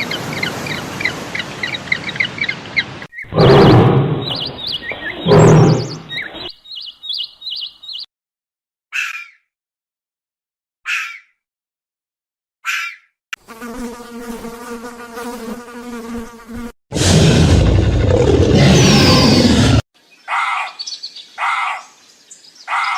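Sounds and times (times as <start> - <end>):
insect wing buzz: 13.4 - 16.8.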